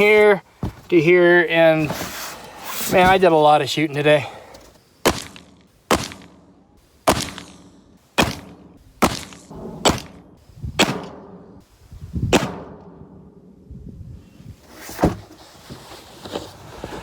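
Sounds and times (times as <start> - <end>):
gunshots with echo: 7.1 - 11.6, 12.3 - 13.1.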